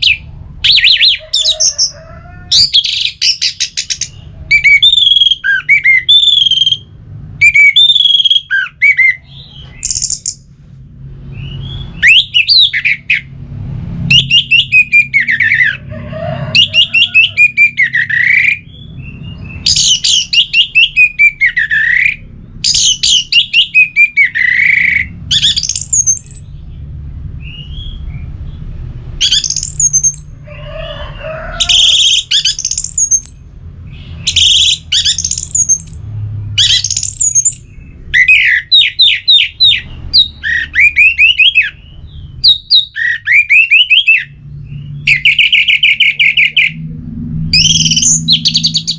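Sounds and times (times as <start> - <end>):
low hum: 44.3 - 48.9.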